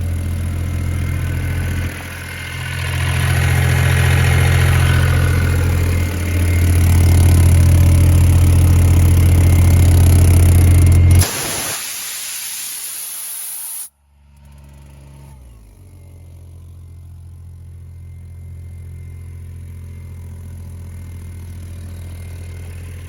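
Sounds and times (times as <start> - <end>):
compressor engine humming: 0.0 - 13.9
rush of hissing air: 11.2 - 13.9.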